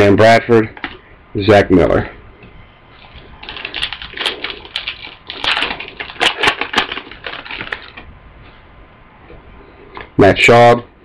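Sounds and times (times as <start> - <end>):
foil wrapper crinkling: 3.0 - 8.1.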